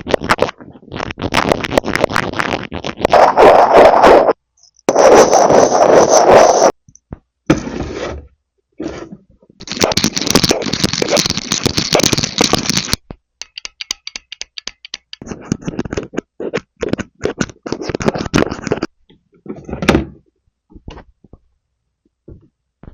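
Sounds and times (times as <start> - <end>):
plastic toy clicks and taps: 9.6 - 15.2
plastic toy pieces rattling: 9.6 - 16.2.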